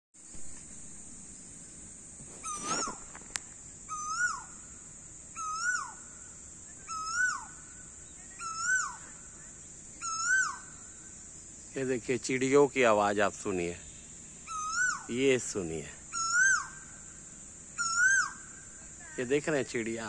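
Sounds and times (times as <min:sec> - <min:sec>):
bird whistled call: 0:02.4 - 0:03.1, 0:03.9 - 0:04.6, 0:05.3 - 0:06.1, 0:06.7 - 0:10.9, 0:14.4 - 0:15.1, 0:16.1 - 0:16.9, 0:17.8 - 0:18.6.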